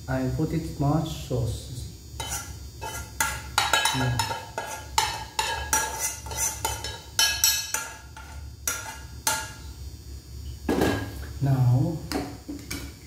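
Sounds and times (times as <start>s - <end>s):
metal utensil clinking on dish: 2.2s - 8.0s.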